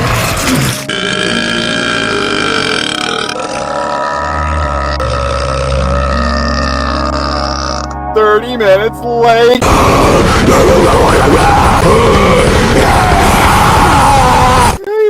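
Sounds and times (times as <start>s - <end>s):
cartoon burp: 0.4s - 8.0s.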